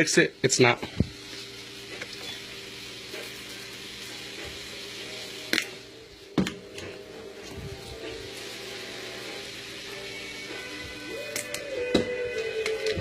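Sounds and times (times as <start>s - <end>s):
steak sizzling in a frying pan: 0.0s - 13.0s.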